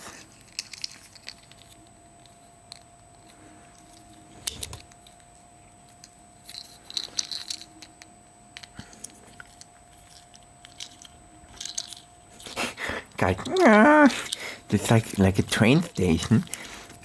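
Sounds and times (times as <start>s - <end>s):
faint steady hum: 0.0s - 17.0s
plastic toy parts clicking: 0.4s - 2.8s, 6.0s - 12.0s.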